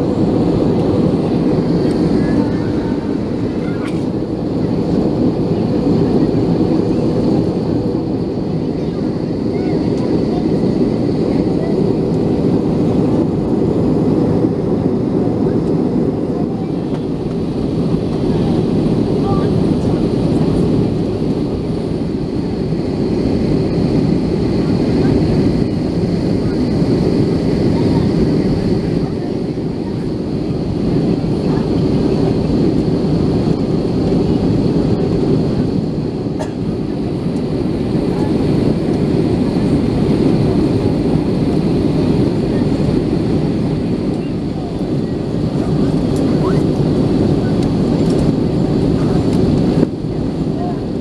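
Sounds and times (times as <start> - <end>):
aircraft cabin engine rumble: 0.0 - 51.0.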